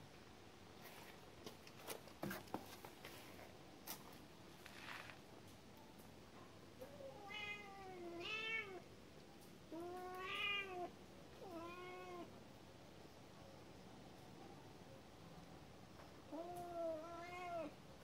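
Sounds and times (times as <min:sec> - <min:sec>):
cat meowing: 0:07.2 - 0:08.8, 0:09.7 - 0:12.3, 0:16.3 - 0:17.8.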